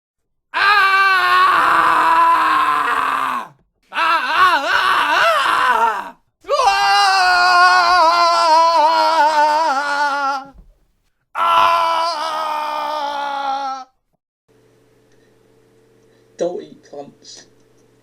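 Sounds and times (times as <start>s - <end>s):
person groaning and wailing: 0.6s - 10.6s, 11.4s - 13.9s.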